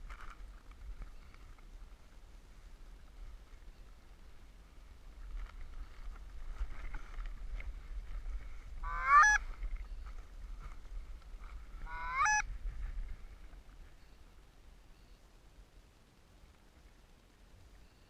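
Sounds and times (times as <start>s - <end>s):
loud goose honks: 8.8s - 9.4s, 11.9s - 12.4s
faint goose honking: 8.8s - 9.5s, 11.8s - 12.5s.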